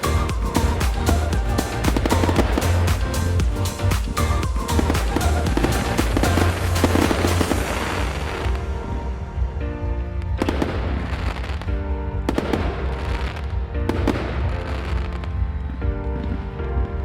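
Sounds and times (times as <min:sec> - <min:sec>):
fireworks bangs with crackling: 0:00.0 - 0:08.7
music with held chords: 0:00.0 - 0:17.0.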